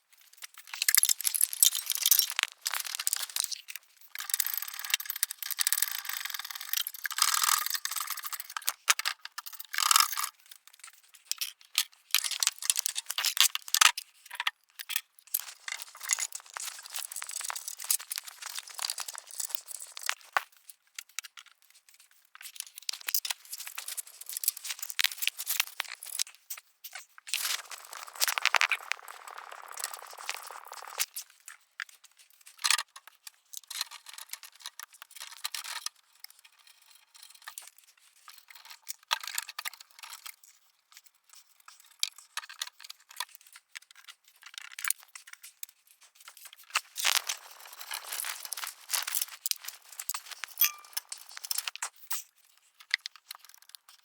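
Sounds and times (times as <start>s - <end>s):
metal parts clinking: 47.0s - 51.7s.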